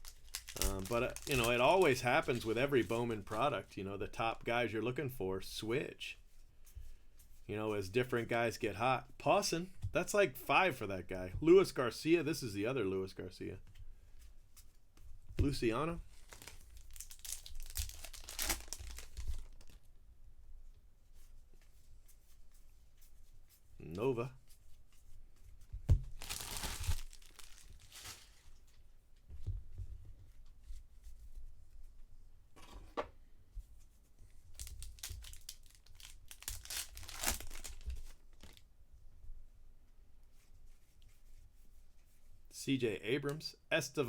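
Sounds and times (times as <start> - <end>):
cards rustling: 0.0 - 3.6, 15.4 - 19.8, 26.0 - 28.6, 34.6 - 38.6
foil wrapper crinkling and tearing: 0.0 - 3.6, 16.1 - 19.9, 26.0 - 28.8, 34.5 - 38.6.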